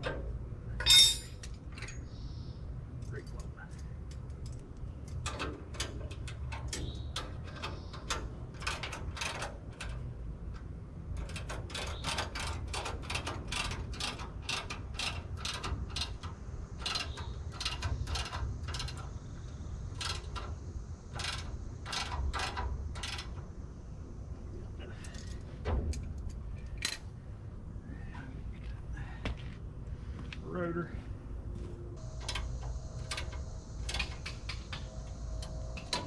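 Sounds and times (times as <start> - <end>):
steady low rumble: 0.0 - 36.0
ratchet wrench clicking: 11.2 - 19.1.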